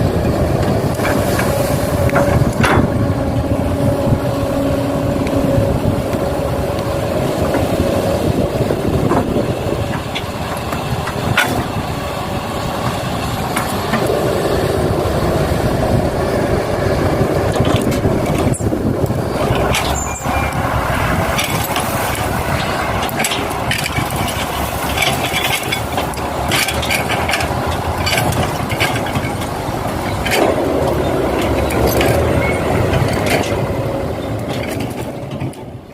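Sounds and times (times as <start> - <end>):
excavator running: 0.0 - 35.9.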